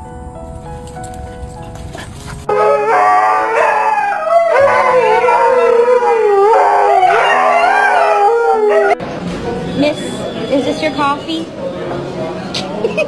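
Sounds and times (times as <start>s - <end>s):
background music with low notes: 0.0s - 10.1s
dog howling: 2.5s - 9.0s.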